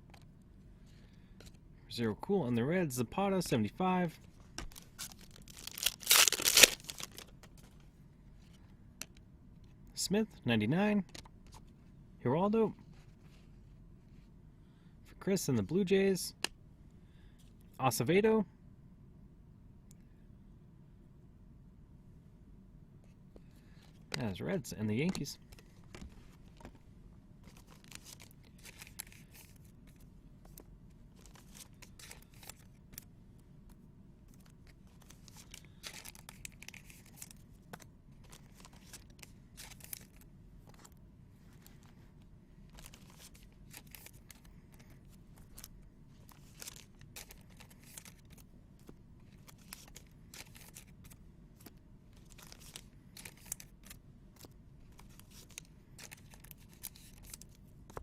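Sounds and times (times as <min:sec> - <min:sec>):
card pack wrappers tearing: 0:04.6 - 0:07.4, 0:27.5 - 0:29.6, 0:31.2 - 0:32.8, 0:34.4 - 0:37.4, 0:38.2 - 0:40.2, 0:42.8 - 0:44.5, 0:46.3 - 0:48.4, 0:49.3 - 0:51.2, 0:52.2 - 0:57.6.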